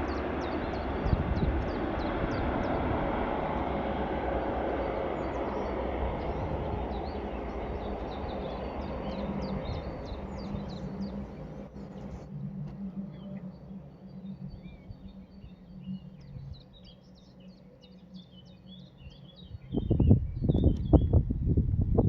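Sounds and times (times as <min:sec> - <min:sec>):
broad rushing rumble: 0:00.0 - 0:16.9
small birds chirping: 0:00.0 - 0:21.2.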